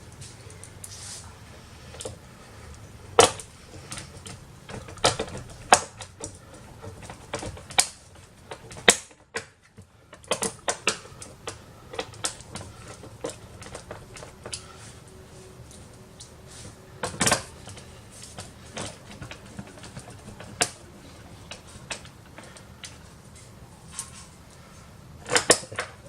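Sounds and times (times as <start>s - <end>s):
plastic parts clicking and knocking: 1.9s - 14.7s, 17.0s - 24.1s, 25.2s - 26.0s.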